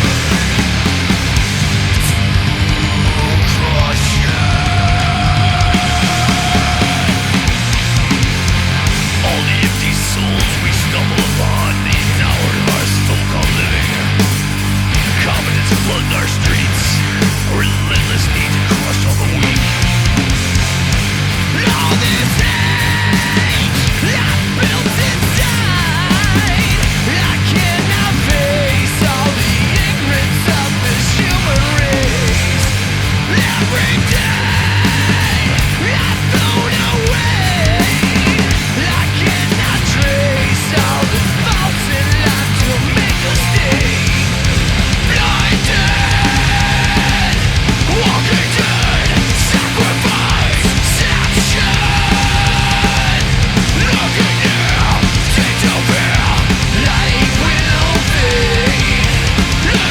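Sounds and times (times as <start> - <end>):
heavy rock music: 0.0 - 59.9.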